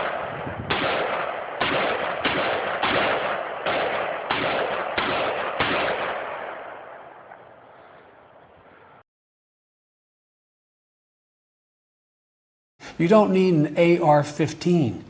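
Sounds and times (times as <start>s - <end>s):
echoing gunshots: 0.0s - 8.9s.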